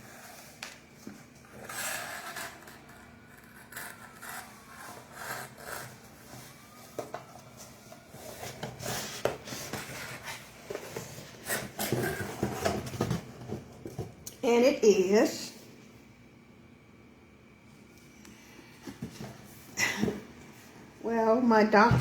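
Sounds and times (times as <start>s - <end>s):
cardboard and plastic rubbing: 3.8s - 14.1s.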